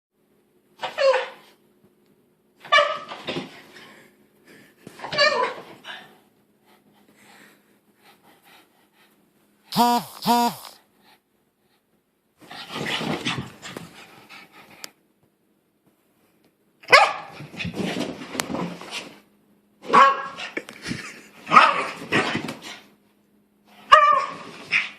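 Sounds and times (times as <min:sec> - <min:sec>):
dog barking: 0:16.9 - 0:17.3, 0:19.9 - 0:20.4, 0:21.5 - 0:21.9, 0:23.9 - 0:24.4.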